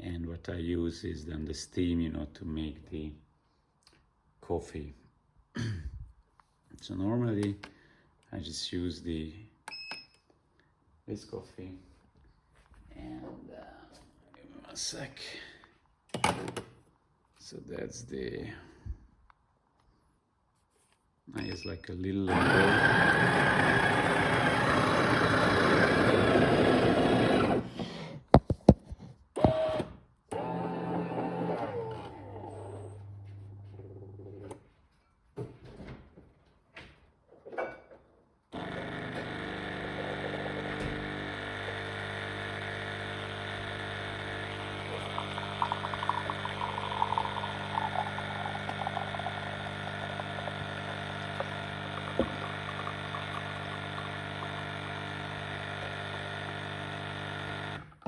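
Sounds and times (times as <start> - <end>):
coffee machine pump humming: 22.3 - 27.7, 38.6 - 58.0
coffee machine grinding: 22.3 - 27.8, 38.6 - 58.0.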